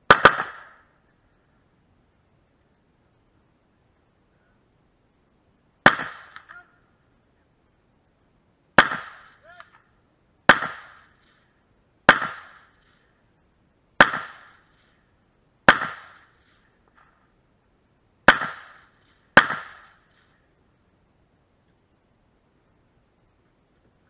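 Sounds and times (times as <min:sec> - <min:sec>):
rifle shots with echo: 0:00.1 - 0:00.9, 0:05.8 - 0:06.6, 0:08.8 - 0:09.8, 0:10.5 - 0:11.4, 0:12.1 - 0:13.0, 0:14.0 - 0:14.8, 0:15.7 - 0:16.5, 0:18.3 - 0:20.3.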